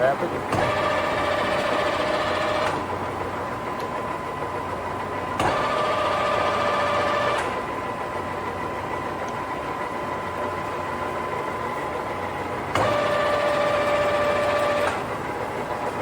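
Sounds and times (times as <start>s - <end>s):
lathe traverse whine: 0.0s - 16.0s
lathe humming: 0.2s - 16.0s.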